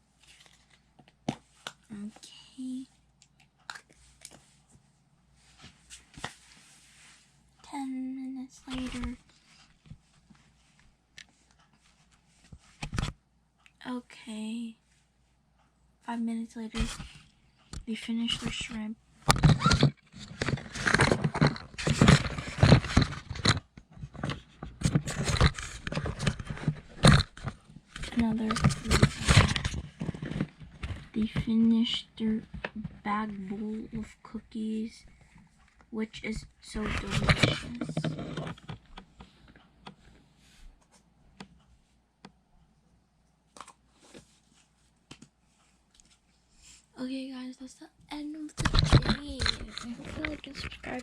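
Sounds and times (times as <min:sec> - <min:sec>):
plastic toy pieces being handled: 0:19.3 - 0:31.5, 0:36.8 - 0:39.0, 0:48.6 - 0:51.0.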